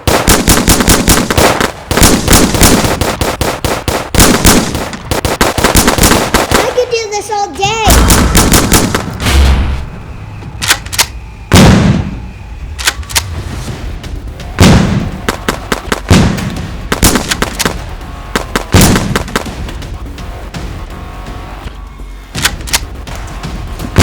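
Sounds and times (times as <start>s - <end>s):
gunshot sound effects: 0.0s - 6.8s, 7.9s - 10.0s, 11.5s - 12.3s, 14.5s - 17.8s, 18.4s - 19.7s.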